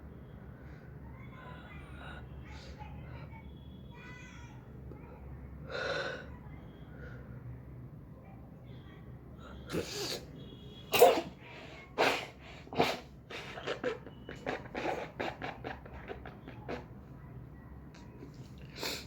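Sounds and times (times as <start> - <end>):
person sneezing: 9.7 - 10.3, 10.9 - 11.4, 12.0 - 15.8
sniffing breaths: 11.3 - 16.9.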